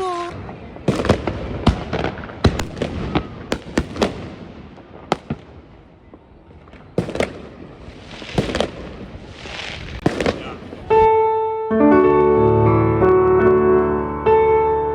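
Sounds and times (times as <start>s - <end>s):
firework bangs: 0.0s - 11.1s
firework crackling: 0.0s - 11.1s.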